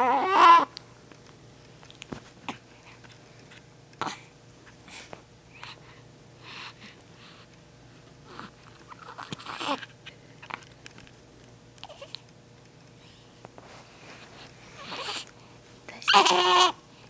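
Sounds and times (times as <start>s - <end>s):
baby grunting and squeaking: 0.0s - 0.7s, 8.9s - 9.8s, 14.8s - 15.2s, 16.1s - 16.8s
baby squealing: 0.0s - 0.7s, 16.1s - 16.7s.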